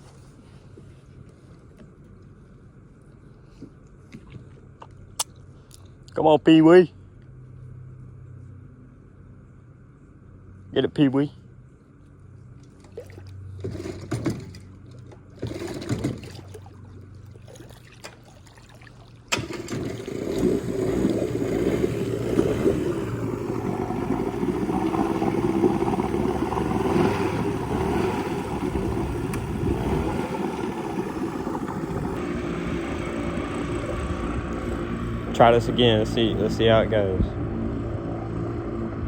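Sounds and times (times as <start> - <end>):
low hum: 6.9 - 39.0
boat engine running: 10.0 - 39.0.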